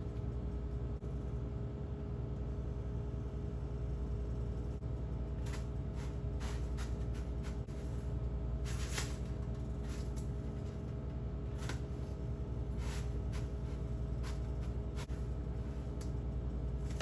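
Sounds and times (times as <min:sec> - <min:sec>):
low machine hum: 0:00.0 - 0:17.0
handling rustles and knocks: 0:05.4 - 0:17.0.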